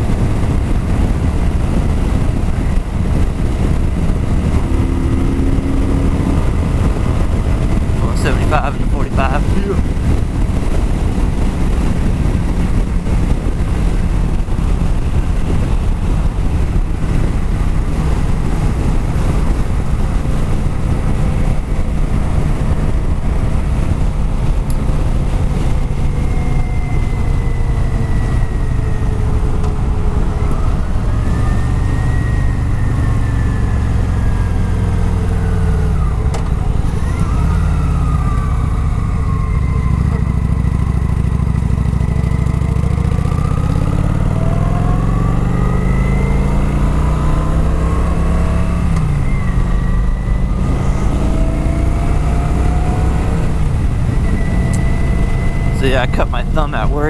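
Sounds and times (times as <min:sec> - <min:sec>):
motorcycle engine at highway speed: 0:00.0 - 0:57.0.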